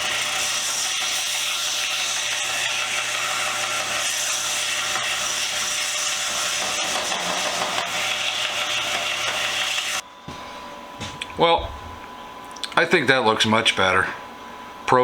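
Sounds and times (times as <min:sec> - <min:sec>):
sander grinding metal: 0:00.0 - 0:10.0
sander motor hum: 0:00.0 - 0:12.1.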